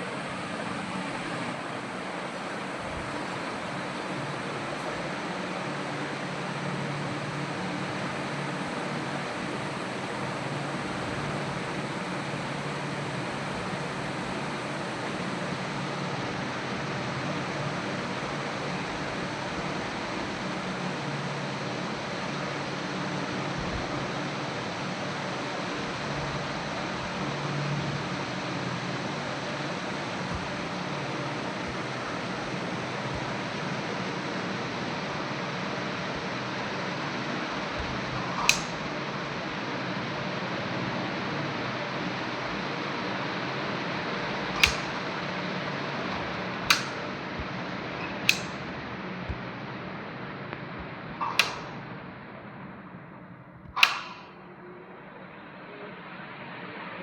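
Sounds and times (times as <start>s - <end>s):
electric fan running: 0.0s - 57.0s
sharp clicks: 37.7s - 39.0s, 44.5s - 45.1s, 46.1s - 48.7s, 51.2s - 51.8s, 53.1s - 54.4s.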